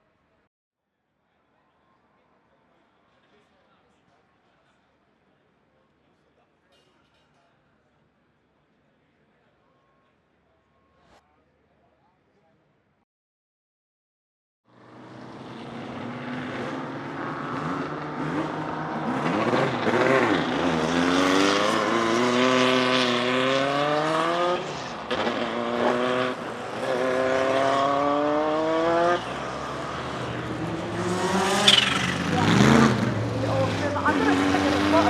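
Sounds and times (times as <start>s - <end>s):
race car engine accelerating: 14.8s - 35.0s
sudden sharp noise: 31.3s - 33.1s.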